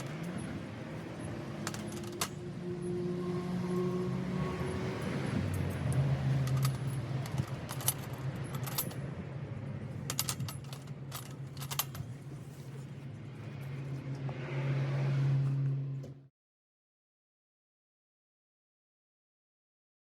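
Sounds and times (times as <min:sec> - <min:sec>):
metallic clinks and jingles: 0:00.0 - 0:02.4, 0:04.6 - 0:09.0, 0:10.0 - 0:12.1.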